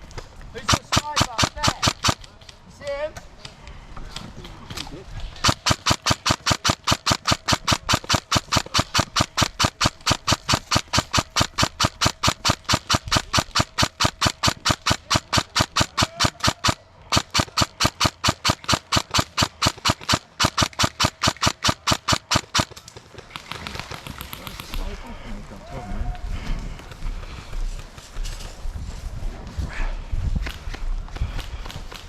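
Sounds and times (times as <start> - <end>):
airsoft gun firing: 0.6 - 2.3, 5.4 - 24.9.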